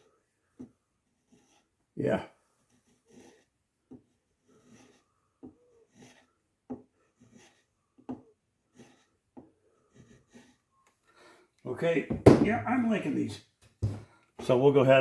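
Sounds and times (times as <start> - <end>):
chisel paring wood: 12.1 - 12.6.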